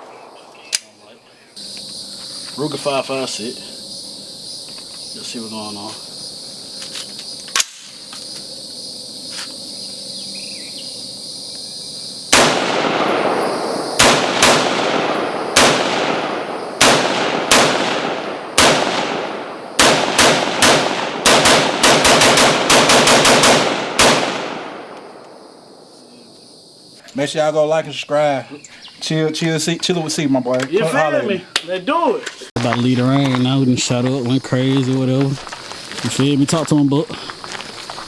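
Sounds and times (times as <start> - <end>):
rifle shots with ringing echo: 0.0 - 1.2, 12.3 - 25.8.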